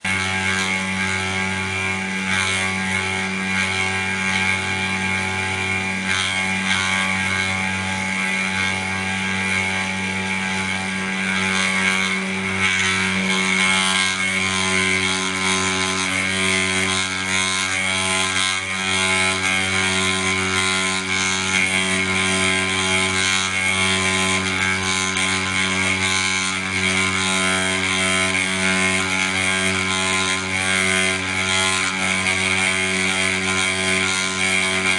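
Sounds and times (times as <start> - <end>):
spindle motor whine: 0.0 - 34.9
stepper motor hum: 0.0 - 34.9.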